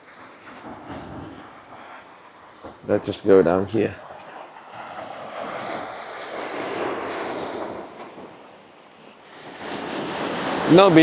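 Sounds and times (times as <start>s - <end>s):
sea waves washing in: 0.0s - 11.0s
wind on microphone: 0.0s - 11.0s.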